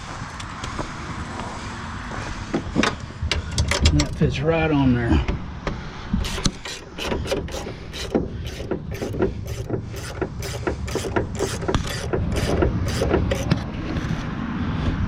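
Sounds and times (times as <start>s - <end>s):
ratcheting wrench clicking: 6.2s - 13.6s.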